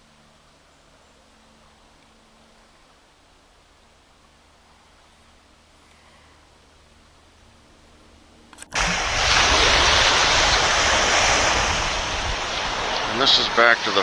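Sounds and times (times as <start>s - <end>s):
faint hiss: 8.7s - 14.0s
river water rushing: 8.7s - 14.0s.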